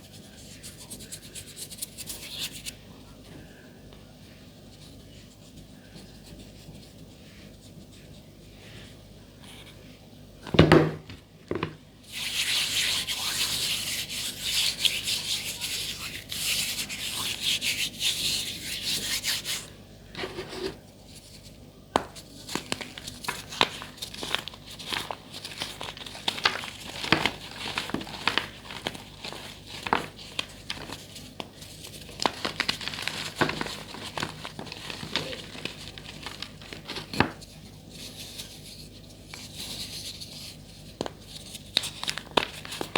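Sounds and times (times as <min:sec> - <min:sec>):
chalk crunching by hand: 0:12.1 - 0:19.7.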